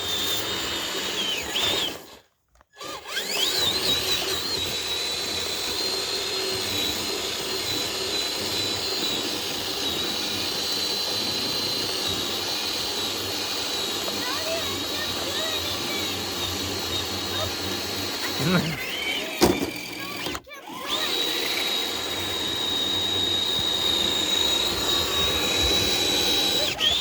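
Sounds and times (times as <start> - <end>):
electric motor whining: 0.0 - 27.0.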